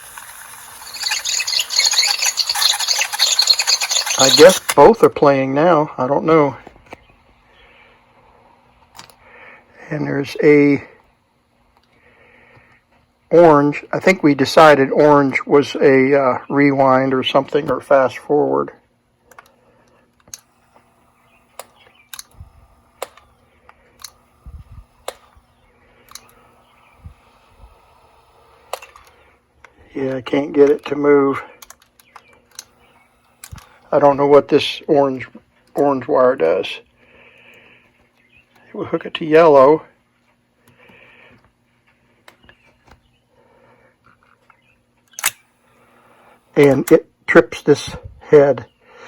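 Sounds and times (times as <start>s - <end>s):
small mechanism clicks: 0.0s - 4.8s, 21.5s - 23.3s, 24.0s - 25.4s, 27.8s - 29.2s, 31.6s - 33.9s, 45.1s - 45.5s
tape mechanism clack: 0.0s - 5.1s, 20.2s - 29.2s, 30.1s - 34.0s, 45.1s - 45.5s
tape machine lever clicks: 21.5s - 23.3s, 45.1s - 45.4s.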